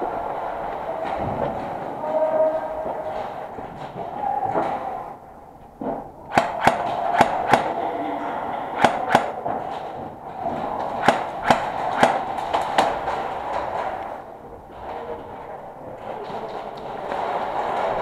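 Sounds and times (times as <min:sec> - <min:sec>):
steady background hum: 0:00.0 - 0:18.0
airsoft gun shots: 0:06.3 - 0:07.8, 0:08.8 - 0:09.4, 0:10.9 - 0:13.0.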